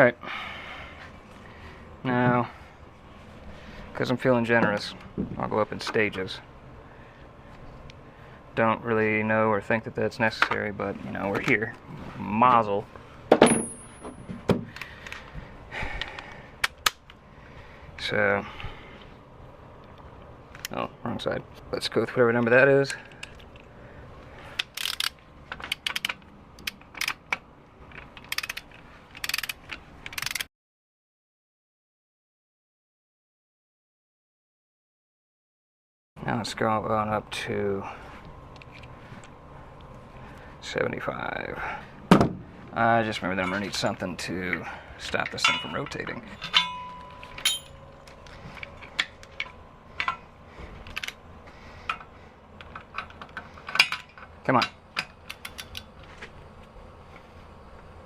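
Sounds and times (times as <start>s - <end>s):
metal tools clinking on metal surface: 13.4s - 14.2s, 43.4s - 43.8s, 45.1s - 48.0s
ratchet wrench clicking: 24.6s - 27.2s, 28.2s - 30.5s.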